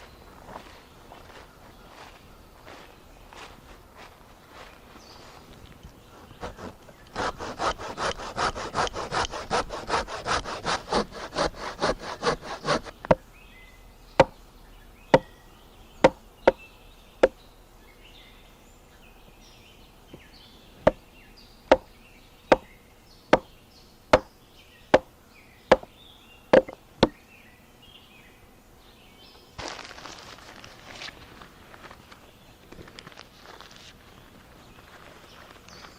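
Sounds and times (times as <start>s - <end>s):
hand saw cutting wood: 6.3s - 13.2s, 26.6s - 27.1s
sharp knocks on wood: 16.0s - 16.6s, 23.3s - 23.5s, 24.1s - 24.3s, 26.5s - 27.2s.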